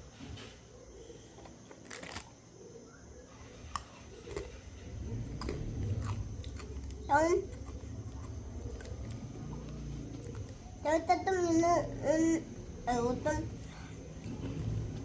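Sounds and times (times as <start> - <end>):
low rumble: 4.7 - 10.7.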